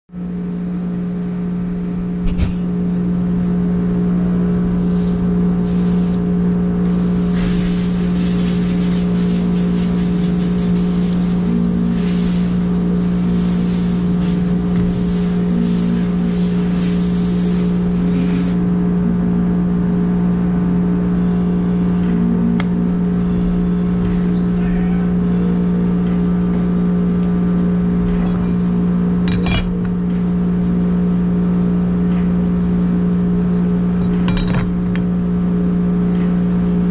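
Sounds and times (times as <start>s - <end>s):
harsh hiss: 4.8s - 6.2s, 6.8s - 18.6s.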